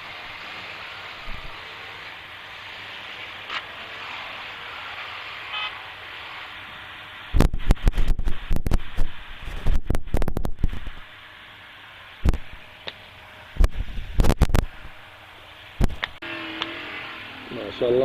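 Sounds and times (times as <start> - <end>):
steady rushing noise: 0.0 - 16.3
car horn toot: 5.5 - 5.8
wind buffeting microphone: 7.3 - 11.1, 13.6 - 15.0.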